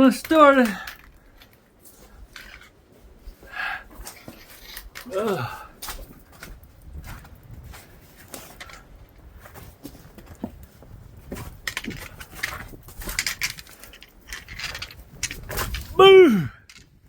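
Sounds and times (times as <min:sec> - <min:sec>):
scuffs and scrapes on rock: 0:01.8 - 0:05.0, 0:05.8 - 0:16.0.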